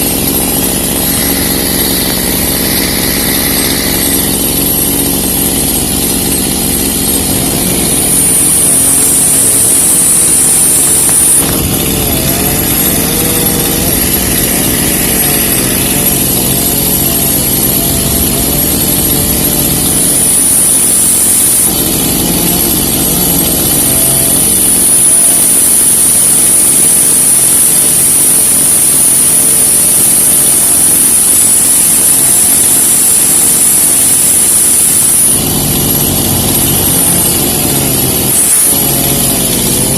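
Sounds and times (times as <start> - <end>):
engine running loudly: 0.0 - 39.9
high thin whine: 0.0 - 39.9.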